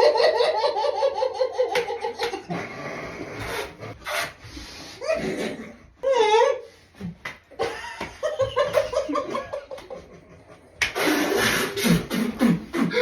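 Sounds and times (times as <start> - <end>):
people laughing: 7.6 - 10.8.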